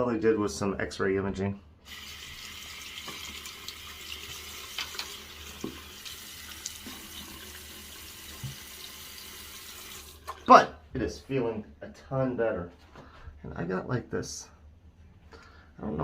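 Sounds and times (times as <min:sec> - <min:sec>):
tap running into a sink: 0:03.0 - 0:07.6, 0:08.2 - 0:08.9.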